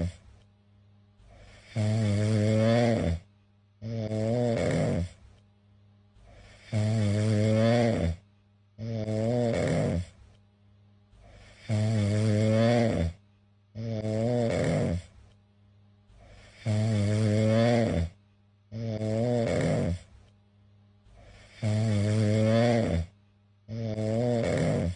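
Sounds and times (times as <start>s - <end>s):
cat snoring: 0.0s - 0.2s, 1.3s - 5.2s, 6.2s - 8.2s, 8.8s - 10.2s, 11.2s - 13.2s, 13.8s - 15.2s, 16.2s - 20.2s, 21.1s - 24.9s.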